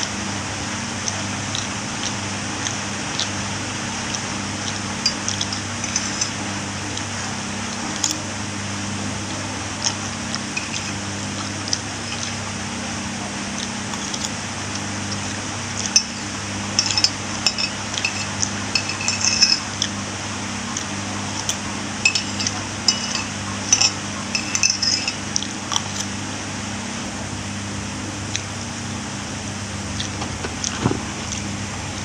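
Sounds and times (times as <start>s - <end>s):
steady low hum: 0.0s - 32.0s
cutlery clinking against a dish: 4.7s - 6.5s, 10.4s - 11.1s, 12.0s - 12.4s, 13.9s - 14.4s, 15.8s - 19.9s, 21.4s - 26.1s.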